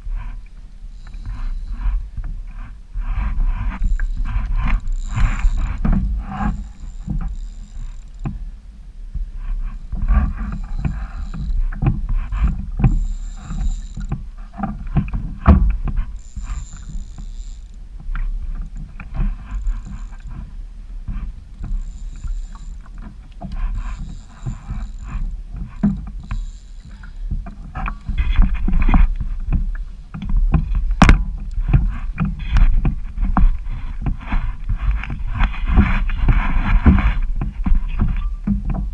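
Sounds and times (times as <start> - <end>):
water splashing against hull: 0.0 - 38.9
wind rumble on microphone: 0.0 - 38.9.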